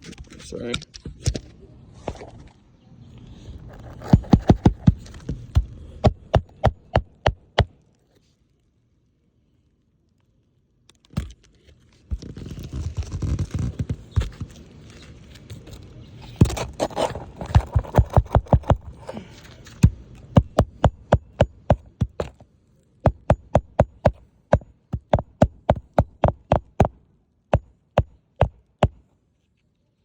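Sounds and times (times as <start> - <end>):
hammer driving roofing nails: 3.8 - 7.7, 16.4 - 22.4, 23.1 - 29.0.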